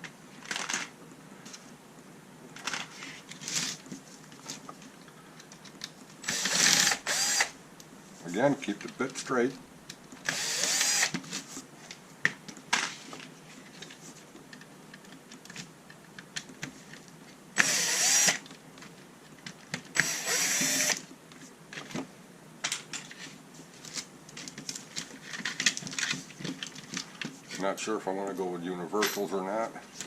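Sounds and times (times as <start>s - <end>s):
powered screwdriver running: 6.2s - 7.5s, 10.3s - 11.2s, 17.6s - 18.4s, 20.0s - 21.0s.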